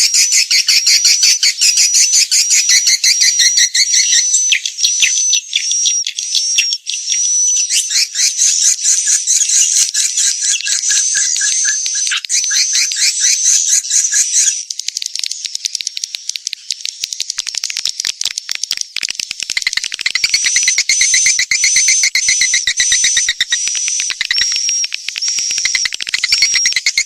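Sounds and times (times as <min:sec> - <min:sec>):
swiftlet chirps and clicks: 0:09.7 - 0:27.0.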